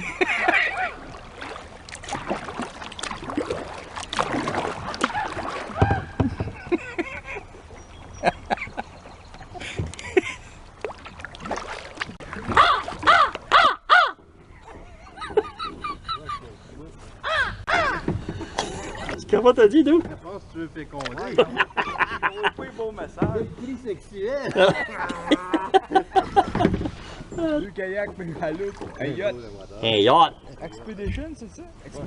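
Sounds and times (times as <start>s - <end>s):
crows cawing: 12.5s - 14.2s, 17.2s - 18.1s.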